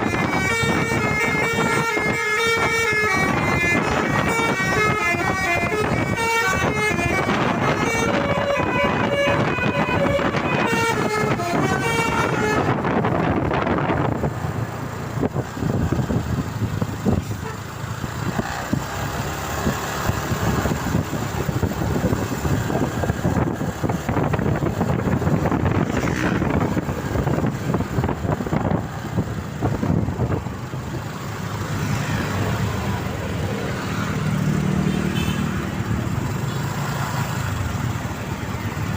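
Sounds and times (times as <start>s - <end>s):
multi-trumpet bus horn melody: 0.0s - 13.4s, 17.2s - 17.8s, 34.8s - 35.7s
bus engine running: 0.0s - 38.9s
road noise: 0.0s - 38.9s.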